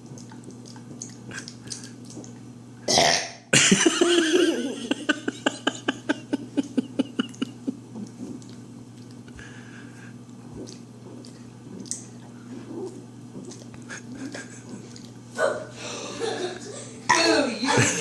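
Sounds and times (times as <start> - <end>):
boy burping: 2.9 - 3.4.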